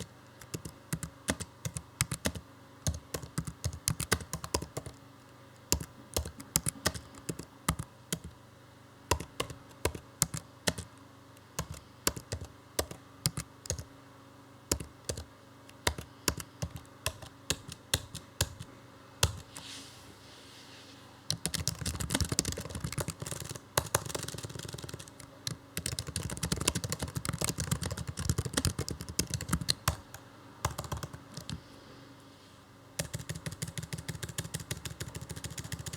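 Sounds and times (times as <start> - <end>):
typing on computer keyboard: 0.0 - 5.0, 5.7 - 8.3, 9.1 - 10.9, 11.6 - 13.9, 14.7 - 19.5, 21.3 - 31.6, 33.0 - 35.9.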